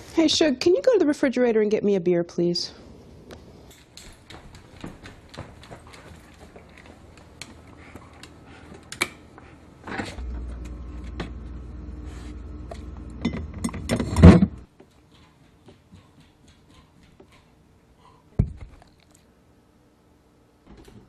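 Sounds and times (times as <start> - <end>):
refrigerator humming: 8.4 - 14.7.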